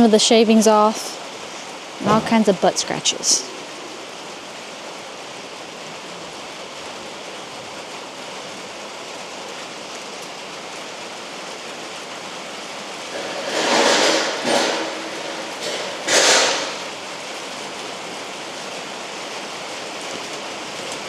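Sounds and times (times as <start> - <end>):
steady rain falling: 0.0 - 21.0
loud short rushing noises: 13.2 - 16.8.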